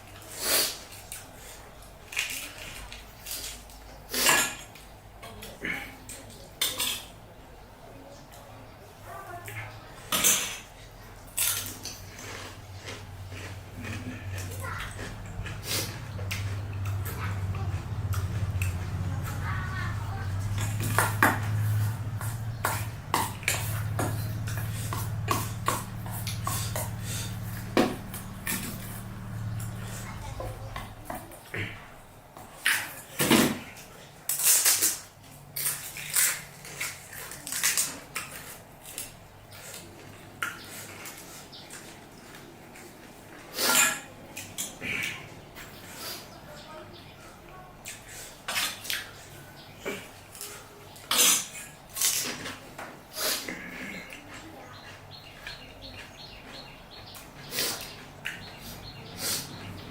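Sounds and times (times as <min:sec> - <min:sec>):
crunchy food being chewed: 0:09.5 - 0:31.9, 0:34.3 - 0:46.2, 0:47.8 - 0:59.8
steady low hum: 0:09.7 - 0:32.3.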